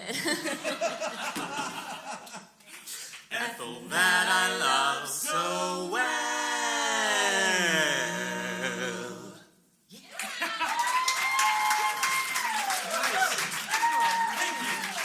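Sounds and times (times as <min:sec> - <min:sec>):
a cappella group singing: 0:03.2 - 0:09.6.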